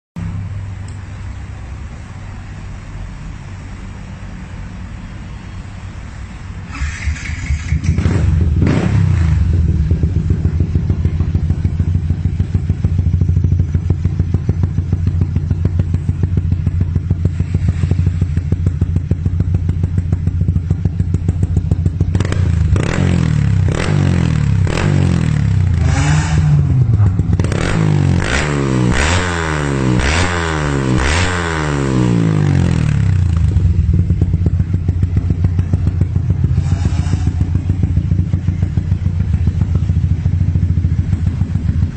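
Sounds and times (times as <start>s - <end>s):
motorcycle engine idling and revving: 0.2s - 41.9s.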